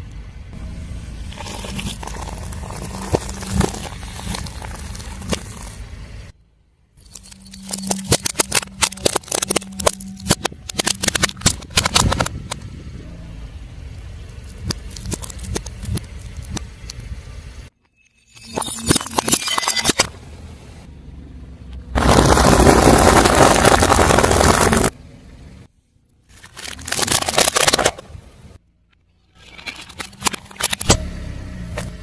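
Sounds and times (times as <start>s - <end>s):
car engine hum: 0.0s - 17.7s, 20.1s - 25.8s, 30.3s - 32.0s
tyre crushing crunchy objects: 1.2s - 5.9s, 14.4s - 16.6s, 22.0s - 25.0s, 26.3s - 28.1s.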